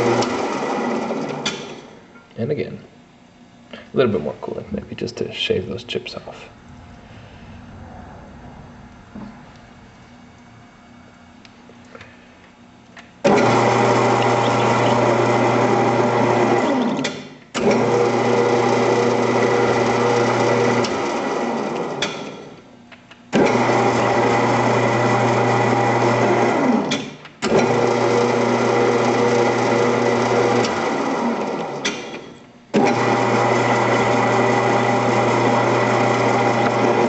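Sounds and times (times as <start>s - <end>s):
lathe motor and gear drive running: 0.0s - 2.0s, 13.2s - 22.5s, 23.4s - 37.0s.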